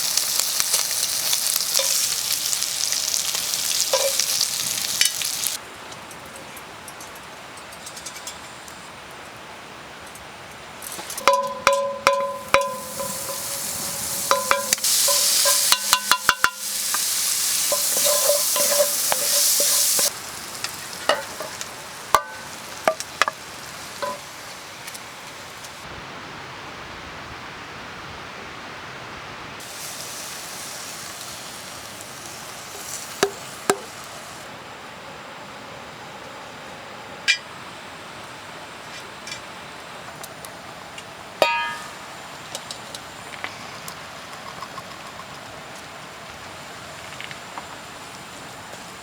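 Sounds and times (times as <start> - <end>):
food sizzling in a pan: 0.0 - 5.6, 10.8 - 25.8, 29.6 - 34.5, 41.4 - 42.3
utensil clinking on metal pan: 0.7 - 2.1, 2.9 - 4.4, 10.9 - 23.4, 24.0 - 24.3, 41.4 - 42.0.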